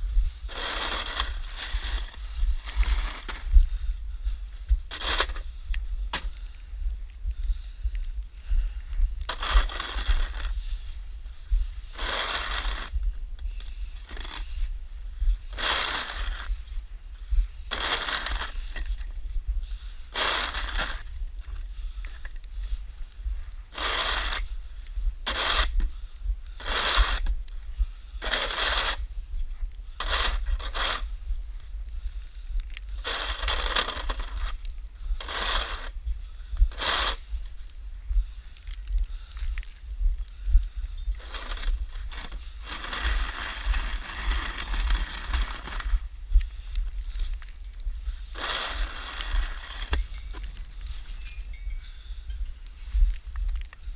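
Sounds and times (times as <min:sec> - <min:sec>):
snow shovel scraping snow: 0:00.5 - 0:03.5, 0:04.9 - 0:05.5, 0:09.3 - 0:10.6, 0:11.9 - 0:13.0, 0:14.0 - 0:14.6, 0:15.5 - 0:16.6, 0:17.7 - 0:19.0, 0:20.1 - 0:21.1, 0:23.7 - 0:24.5, 0:25.2 - 0:25.8, 0:26.6 - 0:27.3, 0:28.2 - 0:29.0, 0:30.0 - 0:31.1, 0:33.0 - 0:34.6, 0:35.2 - 0:36.0, 0:36.7 - 0:37.3, 0:41.2 - 0:46.0, 0:48.3 - 0:51.2.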